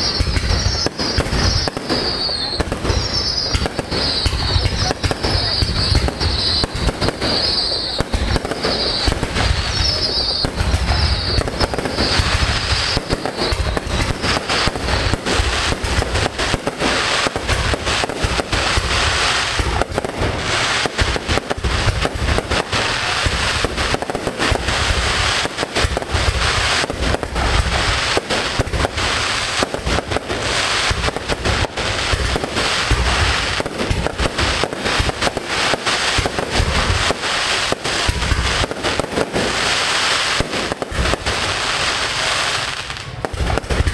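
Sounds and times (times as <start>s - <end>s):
fireworks bangs and crackling: 0.0s - 43.9s.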